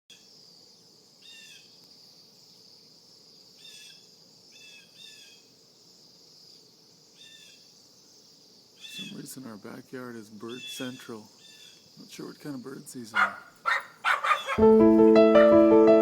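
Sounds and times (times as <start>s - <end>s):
steady high-pitched hiss: 0.1s - 16.0s
faint bird flight calls: 13.2s - 14.6s.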